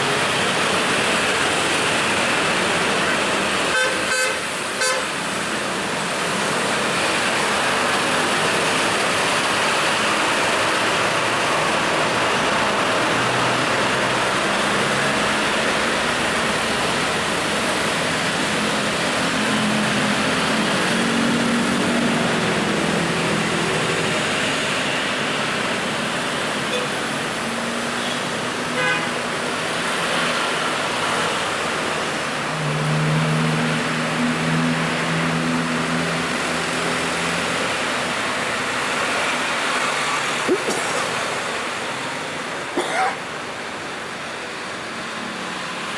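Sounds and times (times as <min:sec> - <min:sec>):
passing cars roar: 0:00.0 - 0:45.9
car horn toot: 0:03.7 - 0:05.1, 0:28.8 - 0:29.0.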